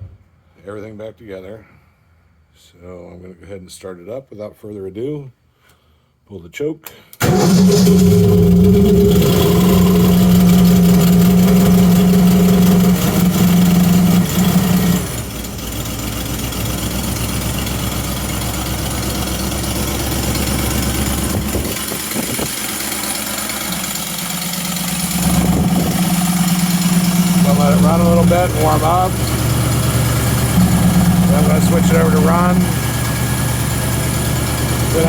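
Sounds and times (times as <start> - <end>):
engine idling: 7.2 - 35.0.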